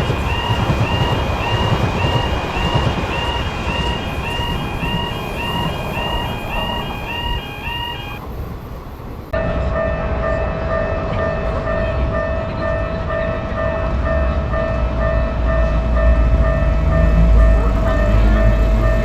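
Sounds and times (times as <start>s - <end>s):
railroad crossing alarm ringing: 0.0s - 19.0s
train rumbling: 0.0s - 19.0s.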